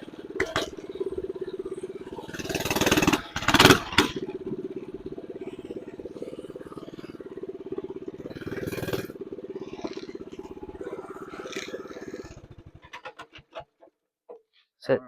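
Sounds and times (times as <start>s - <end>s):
small engine idling: 0.0s - 14.7s.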